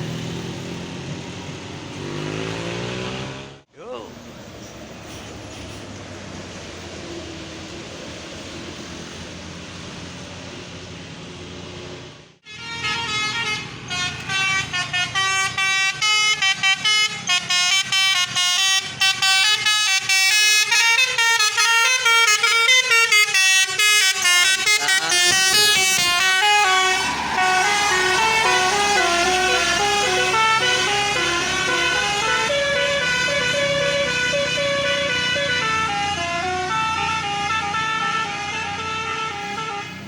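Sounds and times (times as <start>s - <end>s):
bus musical horn playing tune: 12.4s - 40.0s.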